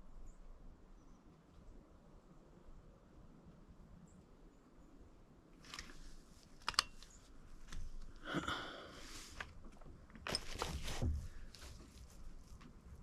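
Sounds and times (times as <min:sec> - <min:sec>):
handling rustling: 0:05.6 - 0:08.2, 0:09.0 - 0:13.0
sharp clicks: 0:06.6 - 0:07.2.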